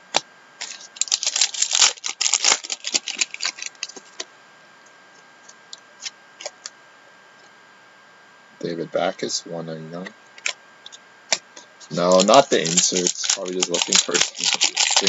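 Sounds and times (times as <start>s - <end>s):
card packaging clicks and crinkles: 0.1s - 4.3s, 10.4s - 10.6s, 11.3s - 15.0s.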